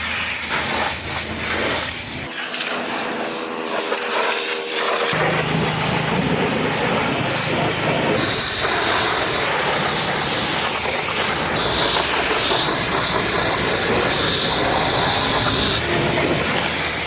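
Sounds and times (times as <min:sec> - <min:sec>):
pressure washer spraying water: 0:00.0 - 0:17.0.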